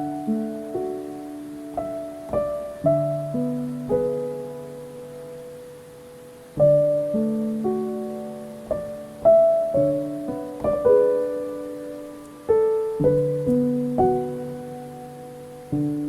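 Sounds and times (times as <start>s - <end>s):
slow gentle piano music: 0.0s - 16.0s.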